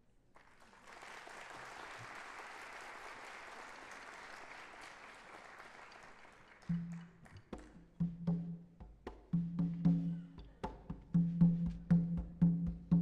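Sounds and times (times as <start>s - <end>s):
audience applauding: 0.4s - 7.6s.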